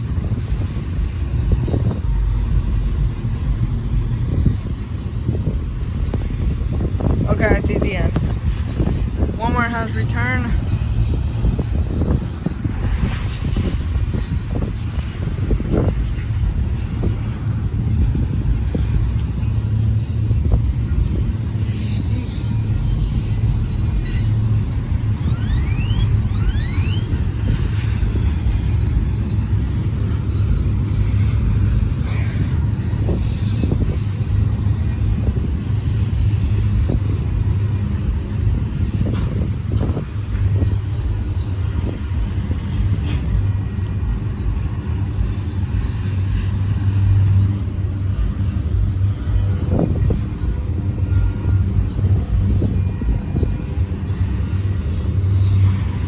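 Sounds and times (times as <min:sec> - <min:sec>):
freight train cars rumbling past: 0:00.0 - 0:56.0
train knocks: 0:00.0 - 0:56.0
faint high squeal: 0:21.6 - 0:27.9.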